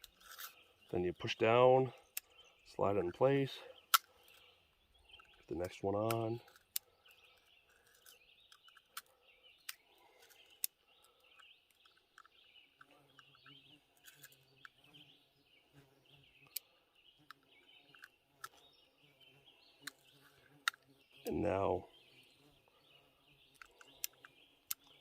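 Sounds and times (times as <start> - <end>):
small metallic clicks: 0.0 - 0.6, 3.8 - 14.8, 16.4 - 18.7, 23.5 - 25.0
faint birdsong: 0.0 - 25.0.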